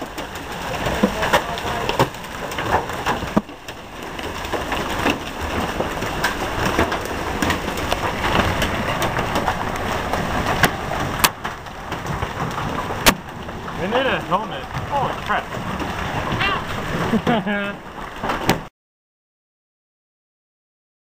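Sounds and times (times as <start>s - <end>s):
heavy rain: 0.0s - 18.7s
strong wind rushing: 3.6s - 18.2s.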